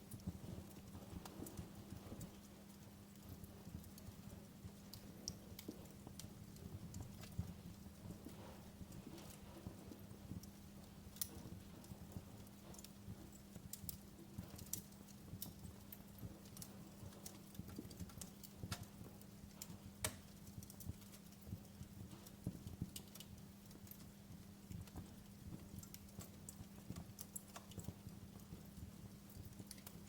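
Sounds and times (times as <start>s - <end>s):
faint low hum: 0.0s - 30.0s
wood fire crackling and popping: 0.0s - 30.0s.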